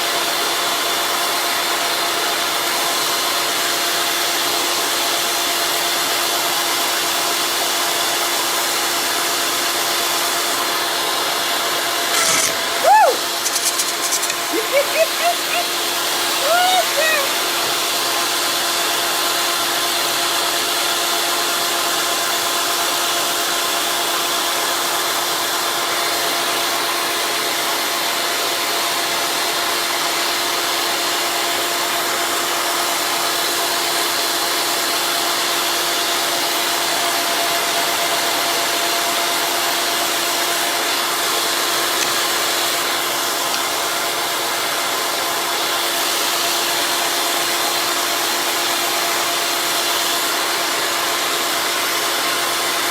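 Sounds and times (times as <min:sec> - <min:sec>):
machine motor whine and hiss: 0:04.3 - 0:16.0.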